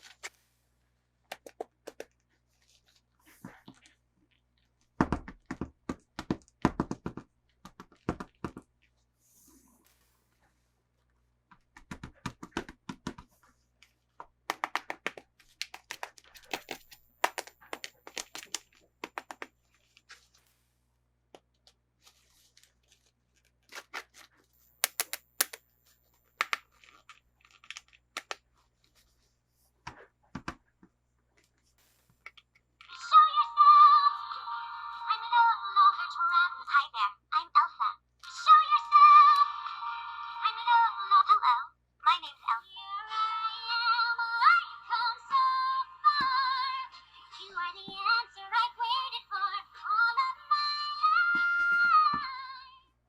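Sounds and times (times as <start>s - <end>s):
plastic and card packaging crackling: 14.5s - 20.6s, 21.5s - 25.6s, 26.3s - 29.0s.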